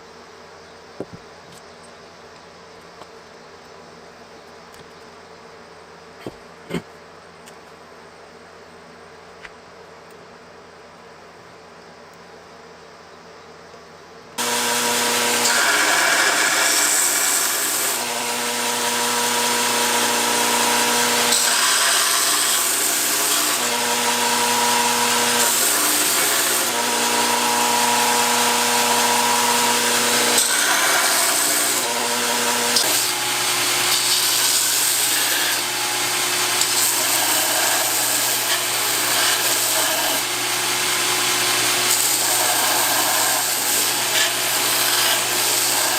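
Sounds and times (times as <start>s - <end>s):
power tool grinding: 14.4s - 45.9s.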